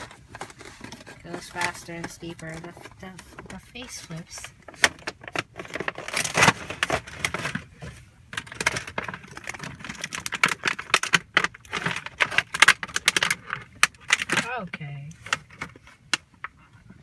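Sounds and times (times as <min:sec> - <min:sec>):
packaging rustling: 0:00.0 - 0:14.5
plastic pieces clicking and rattling: 0:08.4 - 0:14.5.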